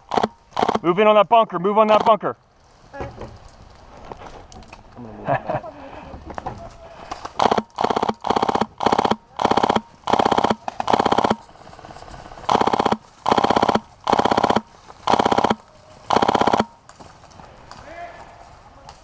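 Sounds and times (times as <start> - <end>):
airsoft rifle firing bursts: 0.0 - 0.9, 1.9 - 2.2, 7.3 - 16.8.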